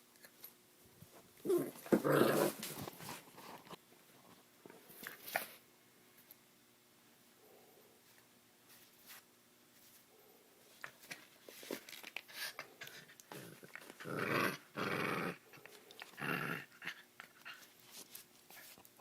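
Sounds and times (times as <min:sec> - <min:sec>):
puppy growling: 0:01.4 - 0:03.2, 0:12.8 - 0:17.6.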